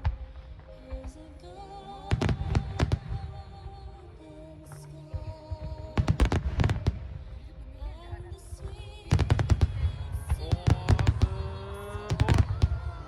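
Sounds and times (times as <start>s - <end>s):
fireworks bursting: 0.0s - 13.0s
music: 0.0s - 13.0s.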